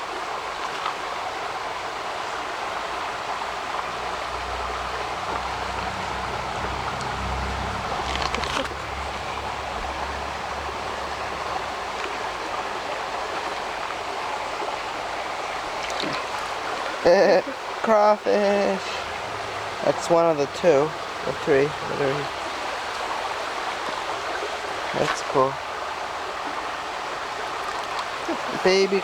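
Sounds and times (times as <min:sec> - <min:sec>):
creek water rushing: 0:00.0 - 0:29.0
low rumble: 0:03.9 - 0:12.0.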